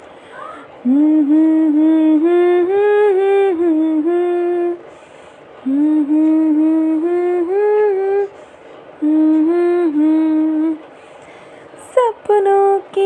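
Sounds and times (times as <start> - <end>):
woman humming: 0.3 - 4.8, 9.0 - 10.8.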